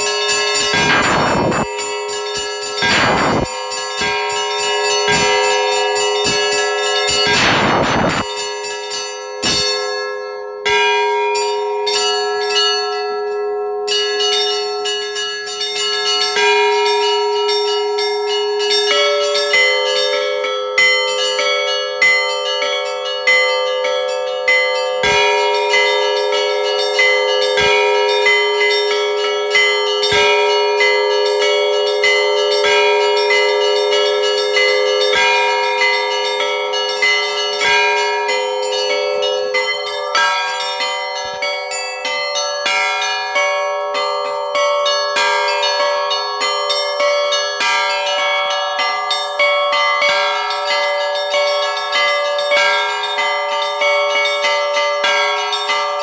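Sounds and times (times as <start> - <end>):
heavy bell striking: 0.0 - 11.0, 24.5 - 44.2
church bells pealing: 0.0 - 56.0.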